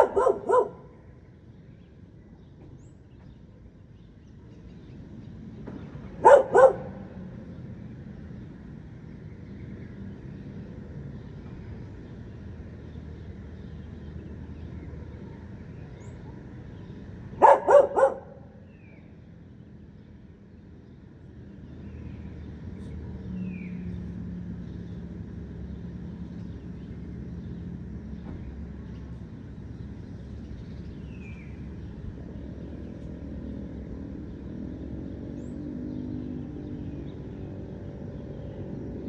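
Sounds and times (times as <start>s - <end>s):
vehicle engine running: 19.5s - 39.0s.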